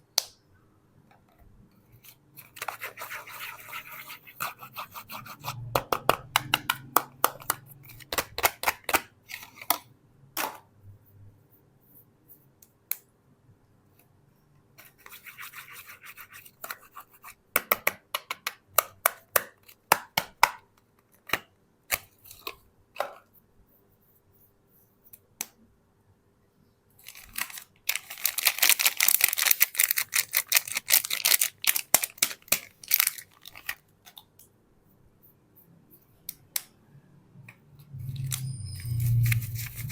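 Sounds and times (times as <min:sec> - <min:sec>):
packaging crackling and crinkling: 0:27.0 - 0:33.8.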